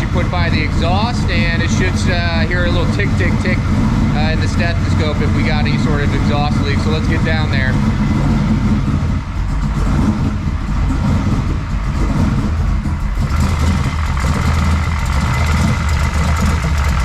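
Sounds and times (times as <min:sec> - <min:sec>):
car engine idling: 0:00.0 - 0:17.0.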